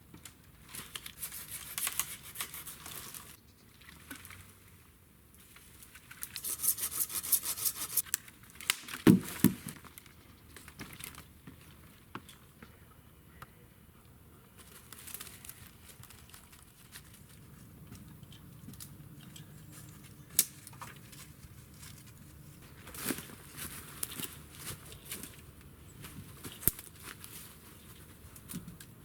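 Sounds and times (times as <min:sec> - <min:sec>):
rustling and crinkling: 0:00.1 - 0:04.7, 0:05.4 - 0:12.8, 0:14.5 - 0:29.0
fast rasping strokes: 0:06.3 - 0:08.0.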